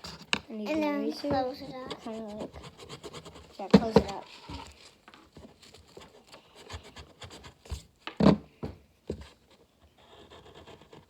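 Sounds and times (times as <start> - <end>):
pencil scratching on paper: 1.4 - 7.8, 9.4 - 11.0.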